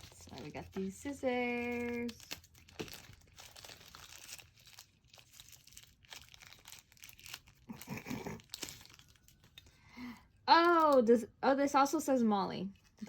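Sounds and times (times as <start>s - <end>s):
plastic packaging crinkling and tearing: 0.0s - 9.8s.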